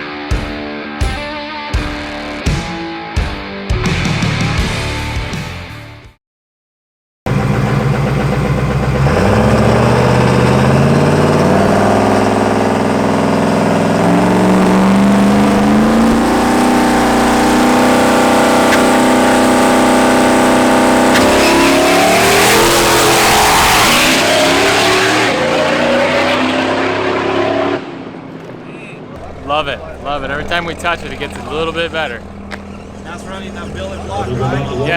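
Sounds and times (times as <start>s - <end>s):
diesel engine revving: 7.3s - 34.9s.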